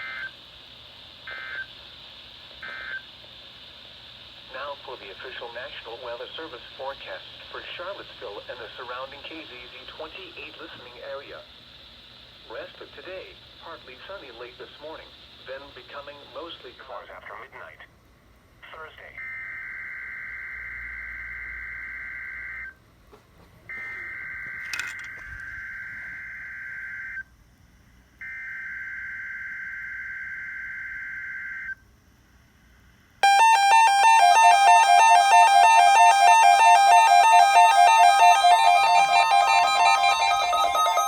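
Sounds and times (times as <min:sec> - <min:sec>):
buzzy digital data tones: 0:33.2 - 0:41.0
electronic melody of stepping beeps: 0:33.2 - 0:41.0.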